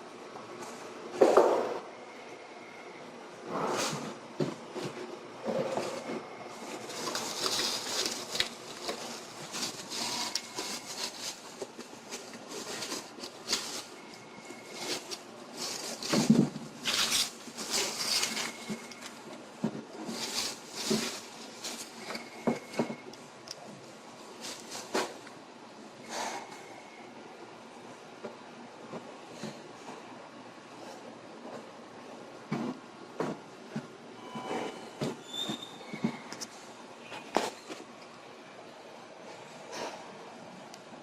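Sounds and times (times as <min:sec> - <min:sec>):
packaging rustling and crinkling: 0:03.8 - 0:25.4.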